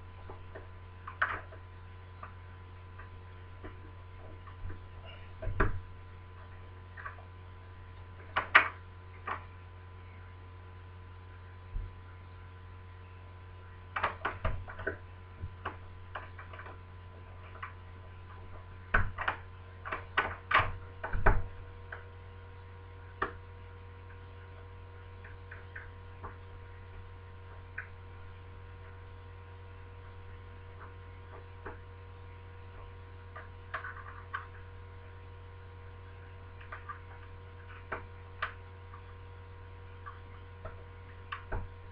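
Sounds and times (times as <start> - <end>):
steady background hum: 0.0 - 41.9.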